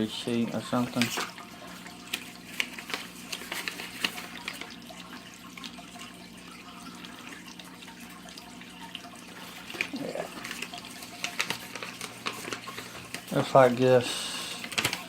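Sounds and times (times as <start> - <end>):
aquarium water splashing: 0.0 - 15.0
paper packaging crinkling: 0.4 - 5.8, 9.2 - 15.0.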